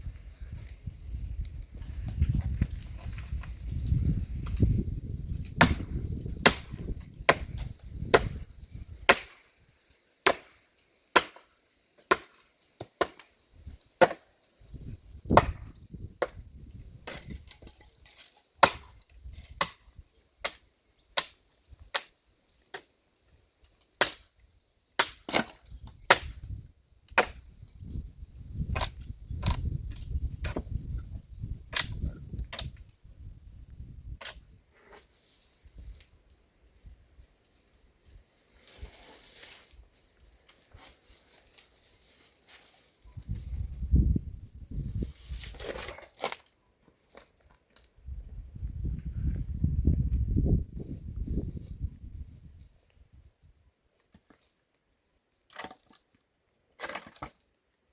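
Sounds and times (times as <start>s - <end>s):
axe chopping wood: 5.6s - 8.4s, 9.1s - 9.4s, 10.2s - 10.5s, 11.2s - 11.4s, 12.1s - 13.2s, 14.0s - 14.2s, 15.3s - 16.4s, 18.6s - 19.8s, 24.0s - 24.3s, 25.0s - 26.4s, 27.2s - 27.4s.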